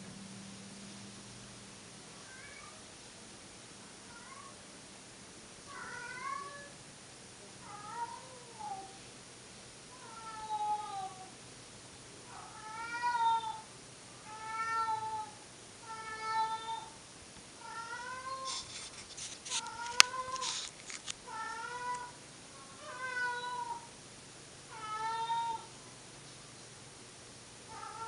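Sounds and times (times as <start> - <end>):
cat yowling: 5.7 - 6.7, 7.6 - 9.0, 10.0 - 11.3, 12.3 - 17.0, 21.3 - 23.9, 24.7 - 25.7, 27.7 - 28.0
rustling: 18.0 - 22.2.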